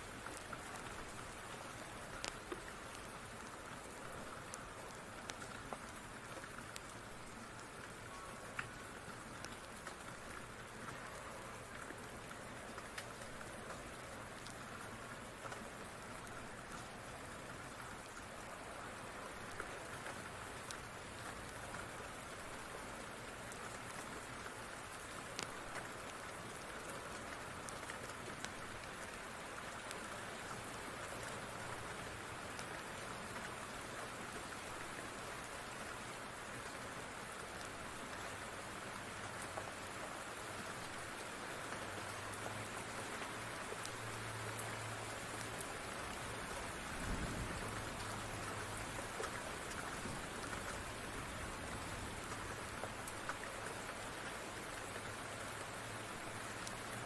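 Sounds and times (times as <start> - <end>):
rain falling on a surface: 0.0 - 57.0
wood fire crackling: 0.2 - 8.8, 25.3 - 26.7.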